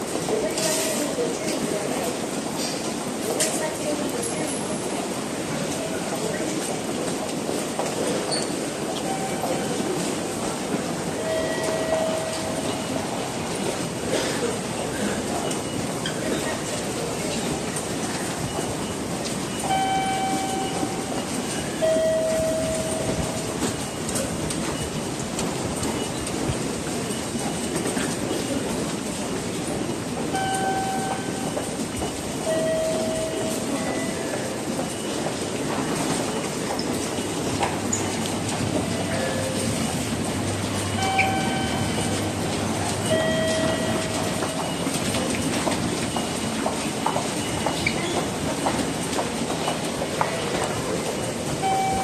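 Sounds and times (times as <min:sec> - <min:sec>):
train noise: 0:00.0 - 0:52.0
brief high tone: 0:40.7 - 0:44.9, 0:51.6 - 0:52.0.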